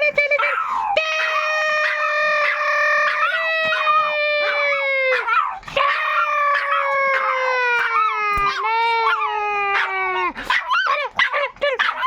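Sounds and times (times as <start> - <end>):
man howling like a dog: 0.0 - 11.1
dog howling cries: 0.4 - 12.0.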